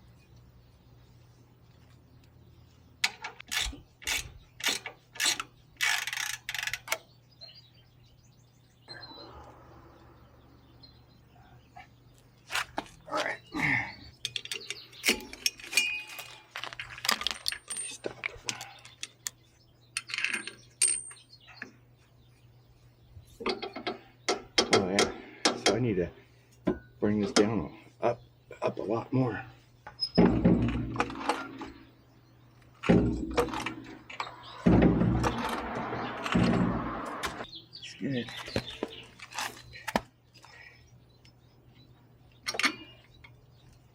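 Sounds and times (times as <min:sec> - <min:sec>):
metal tools clinking: 0:14.2 - 0:19.2.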